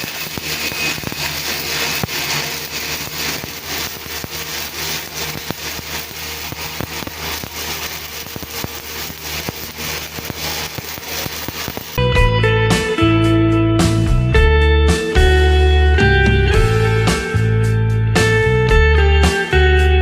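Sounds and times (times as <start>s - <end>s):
welding arc crackling: 0.0s - 12.0s.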